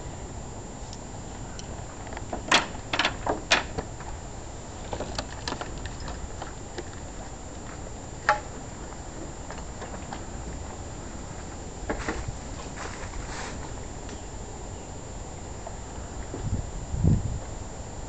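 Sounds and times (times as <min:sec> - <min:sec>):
sharp knocks and clatters: 0:02.3 - 0:03.9.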